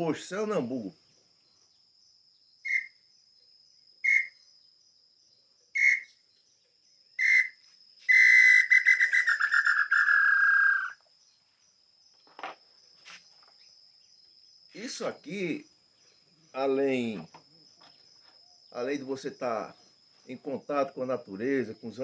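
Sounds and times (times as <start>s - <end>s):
bird-call whistle: 2.6s - 3.0s, 4.0s - 4.5s, 5.7s - 6.2s, 7.2s - 11.0s.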